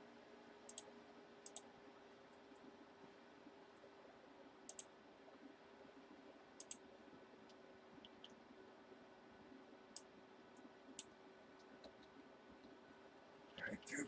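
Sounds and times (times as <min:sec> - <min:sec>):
faint steady hum: 0:00.0 - 0:14.0
computer mouse clicking: 0:00.6 - 0:01.7, 0:04.6 - 0:05.0, 0:06.6 - 0:08.4, 0:09.9 - 0:12.8.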